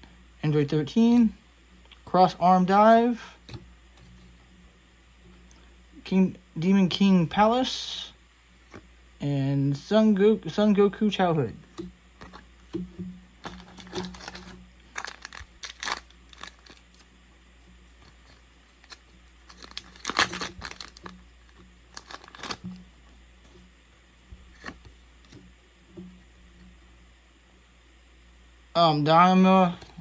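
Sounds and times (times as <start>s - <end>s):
foil wrapper tearing and crinkling: 13.4s - 17.1s, 18.0s - 22.7s.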